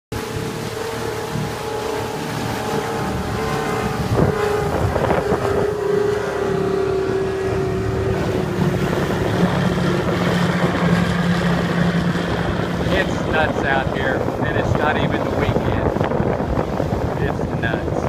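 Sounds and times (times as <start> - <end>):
lower engine note: 0.1 - 14.4
speedboat engines droning: 0.1 - 18.0
wind buffeting microphone: 0.1 - 18.0.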